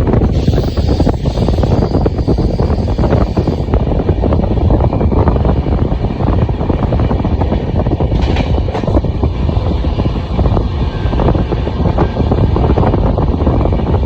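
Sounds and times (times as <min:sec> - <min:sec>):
train rumbling: 0:00.0 - 0:14.0
high-pitched rasp: 0:00.2 - 0:03.8
wheels clattering on rail: 0:06.2 - 0:12.9.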